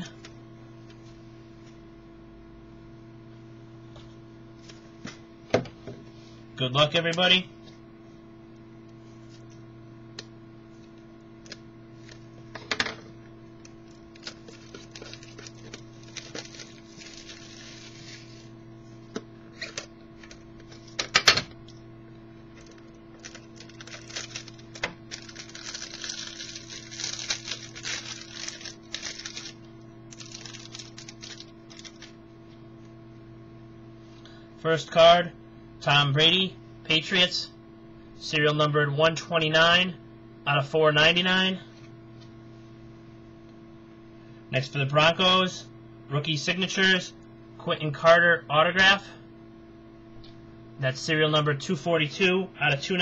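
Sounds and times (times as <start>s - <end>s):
electrical hum: 0.0s - 53.0s
packaging crinkling and rustling: 13.6s - 18.5s, 22.6s - 32.2s.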